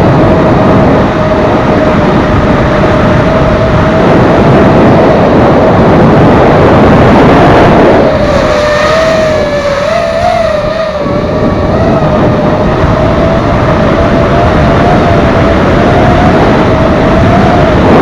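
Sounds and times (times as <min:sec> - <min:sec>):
quadcopter motors whining: 0:00.0 - 0:18.0
loud rushing noise: 0:06.3 - 0:18.0.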